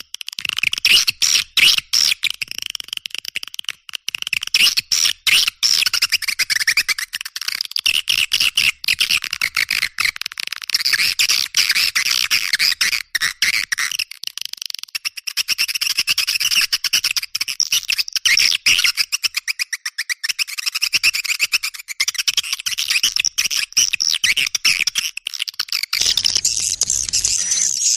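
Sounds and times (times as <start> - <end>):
songbird chirping: 26.0 - 27.9.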